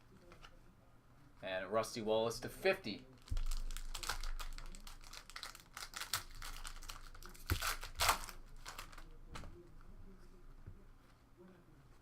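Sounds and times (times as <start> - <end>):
foil wrapper crinkling: 3.2 - 9.1.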